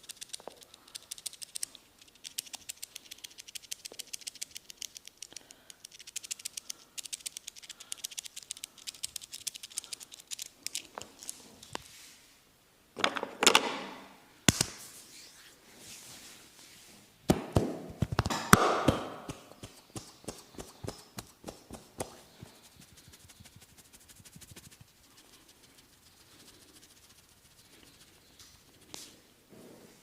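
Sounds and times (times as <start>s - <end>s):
sharp slap: 17.3s - 20.7s
hair rustle: 19.6s - 29.2s.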